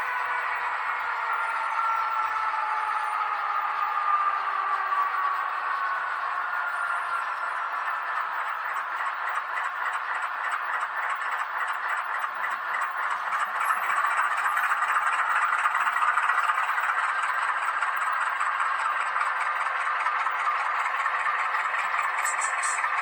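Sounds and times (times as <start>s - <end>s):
model train rattling on track: 4.7s - 23.0s.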